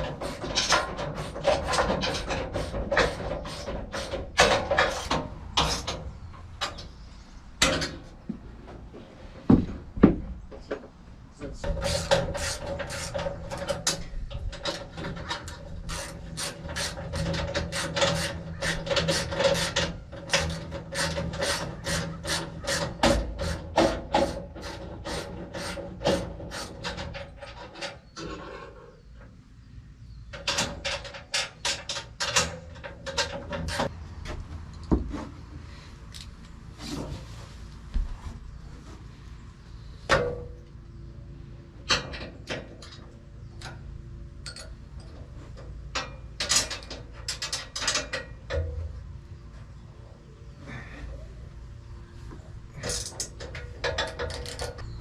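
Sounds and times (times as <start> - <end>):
steady low hum: 31.9 - 55.0.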